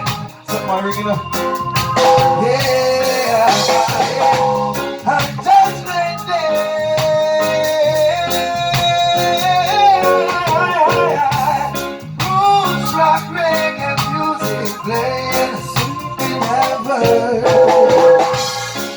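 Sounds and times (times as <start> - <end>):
reggae band playing: 0.0 - 18.9.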